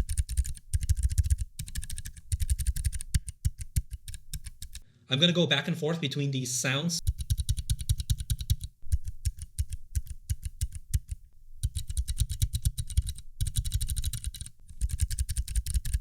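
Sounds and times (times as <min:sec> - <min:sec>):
mechanical keyboard keystrokes: 0:07.1 - 0:16.0.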